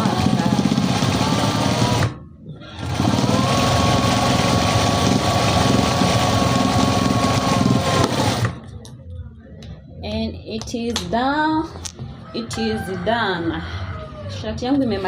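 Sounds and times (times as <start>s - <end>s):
sewing machine stitching: 0.0s - 2.2s, 2.8s - 8.6s.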